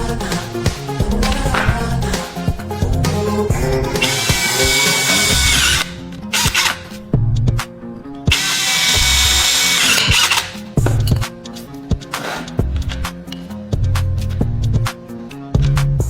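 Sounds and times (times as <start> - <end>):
background music: 0.0 - 16.0
power tool motor running: 4.0 - 6.9, 8.3 - 10.6.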